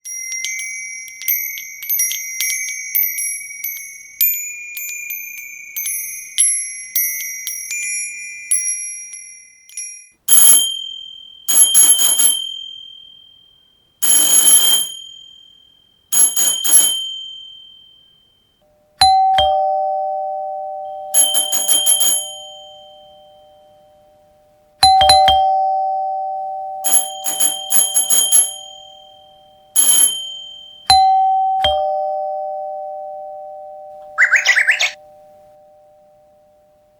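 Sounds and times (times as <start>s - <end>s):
electronic doorbell chime tune: 0.0s - 36.9s
two-tone ding-dong chime: 16.4s - 36.8s.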